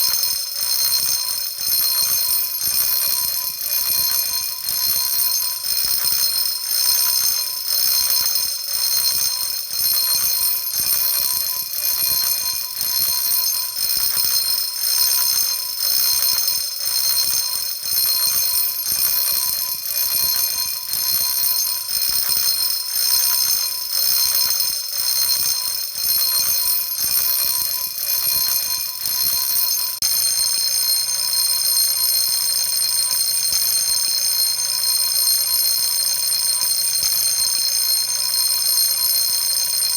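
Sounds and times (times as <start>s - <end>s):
fire alarm bell ringing: 0.0s - 39.9s.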